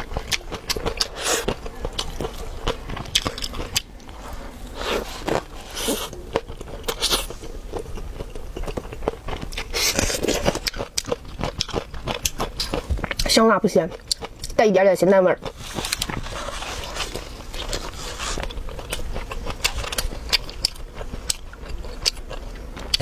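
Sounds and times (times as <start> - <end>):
chewing crunchy peppers: 0.0 - 23.0.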